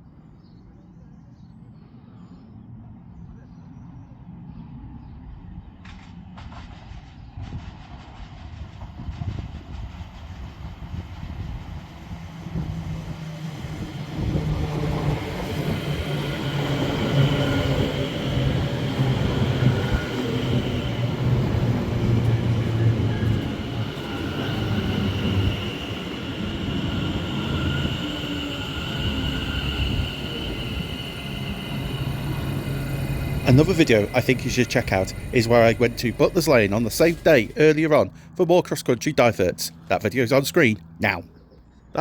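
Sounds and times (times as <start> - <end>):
passenger train running: 4.3 - 41.2
high whining tones: 13.6 - 38.0.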